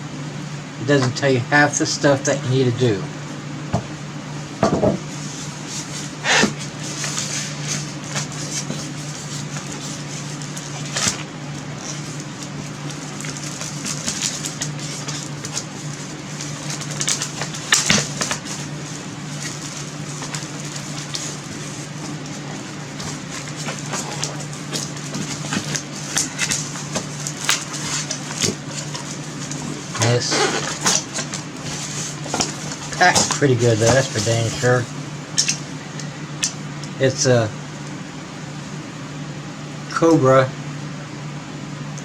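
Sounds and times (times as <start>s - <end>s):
steady low hum: 0.0s - 42.0s
packaging rustling and knocking: 4.6s - 5.1s, 13.1s - 34.6s.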